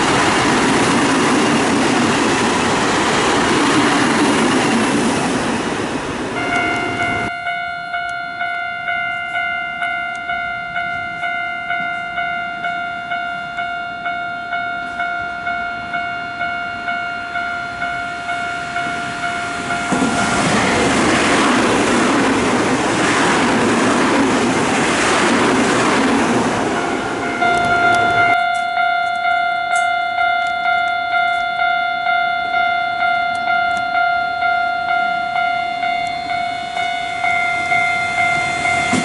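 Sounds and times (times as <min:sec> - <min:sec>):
electric train passing: 0:00.0 - 0:39.0
level crossing alarm ringing: 0:06.3 - 0:23.2, 0:25.5 - 0:39.0.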